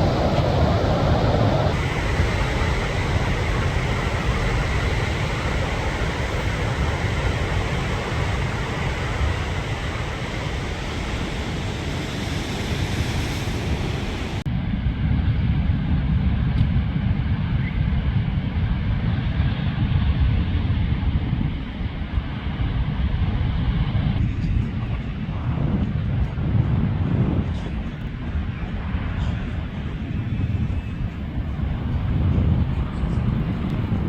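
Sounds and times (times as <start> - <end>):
breaking surf: 0.0 - 14.4
wind buffeting microphone: 0.0 - 34.0.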